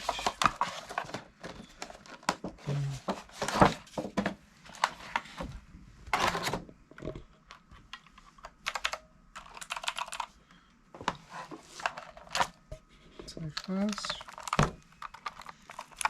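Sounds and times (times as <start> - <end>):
packaging rustling: 13.5 - 16.0.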